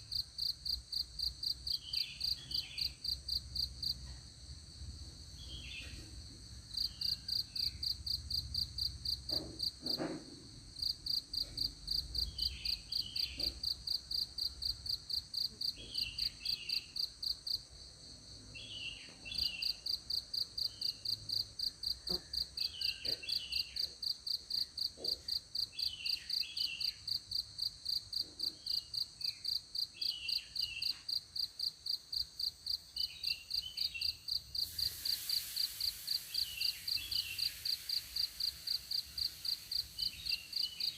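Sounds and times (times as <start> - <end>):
high-pitched insect chirping: 0.1 - 4.0, 6.8 - 9.0, 28.7 - 40.9
short bird chirps: 34.8 - 37.7.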